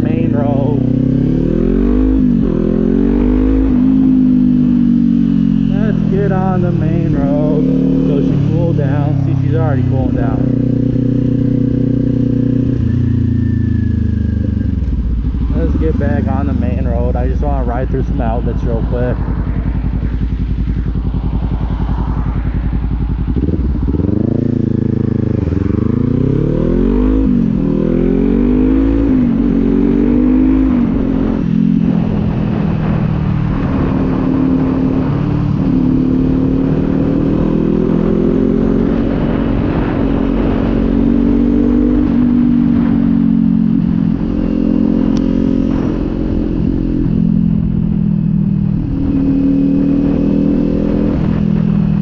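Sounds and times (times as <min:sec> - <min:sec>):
motorcycle engine revving through gears: 0:00.0 - 0:52.0.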